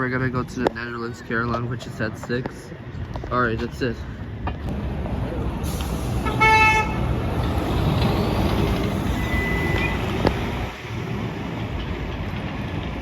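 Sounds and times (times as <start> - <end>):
heavy vehicles passing: 3.9 - 13.0
short horn beep: 9.1 - 10.2.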